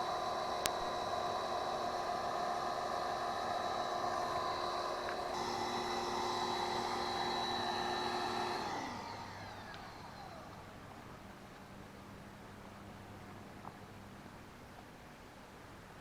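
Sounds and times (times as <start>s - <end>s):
pressure washer whining: 0.0s - 11.1s.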